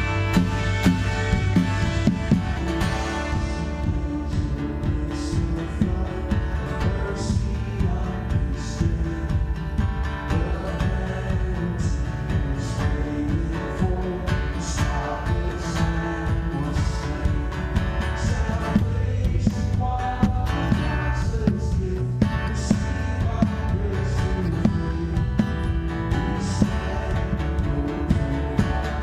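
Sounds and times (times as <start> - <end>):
acoustic guitar: 0.0 - 29.0
bass: 0.0 - 29.0
worship band playing: 0.0 - 29.0.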